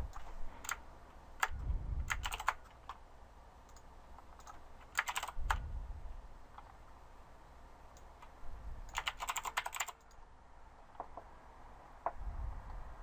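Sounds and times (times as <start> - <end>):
typing on a keyboard: 0.1 - 0.8, 1.4 - 3.0, 3.7 - 5.6, 8.9 - 10.2.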